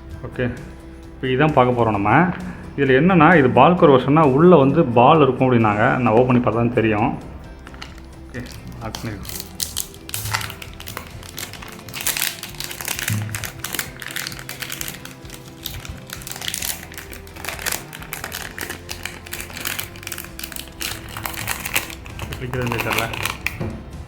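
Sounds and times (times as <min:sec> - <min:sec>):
background music: 0:00.0 - 0:24.0
packaging crinkling and rustling: 0:07.6 - 0:23.6.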